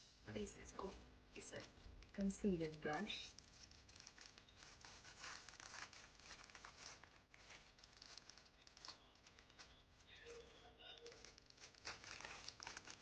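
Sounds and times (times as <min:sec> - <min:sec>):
plastic packaging crinkling: 0:01.4 - 0:13.0.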